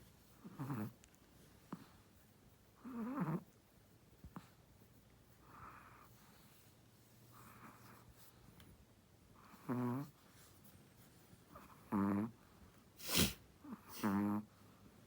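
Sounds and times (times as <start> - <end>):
dog snoring softly: 0.4 - 1.0, 2.8 - 3.5, 5.4 - 6.6, 9.4 - 10.2, 11.5 - 14.6.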